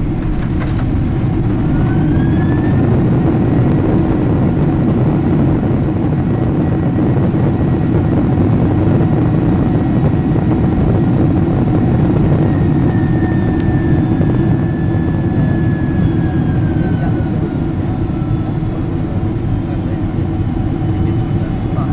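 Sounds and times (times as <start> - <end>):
airliner cabin engine rumble: 0.0 - 21.9
faint high whine: 12.3 - 21.9.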